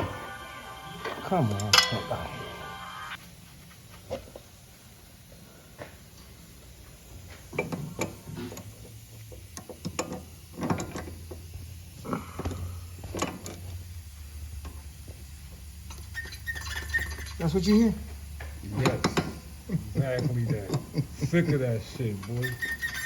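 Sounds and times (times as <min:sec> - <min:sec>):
steady low hum: 0:17.4 - 0:22.4.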